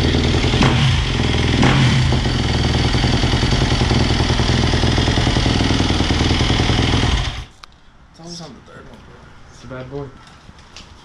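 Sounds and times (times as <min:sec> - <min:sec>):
dirt bike engine revving and idling: 0:00.0 - 0:07.5.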